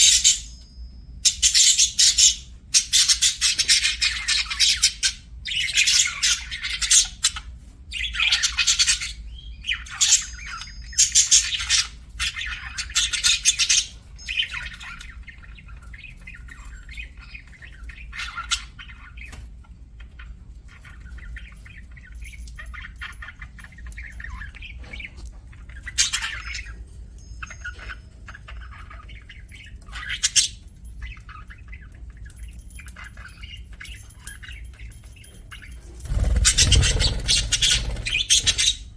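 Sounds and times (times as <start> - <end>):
budgerigars warbling chatter: 1.2 - 21.9, 22.7 - 26.8, 35.5 - 38.9
budgerigars squawking: 36.1 - 38.9.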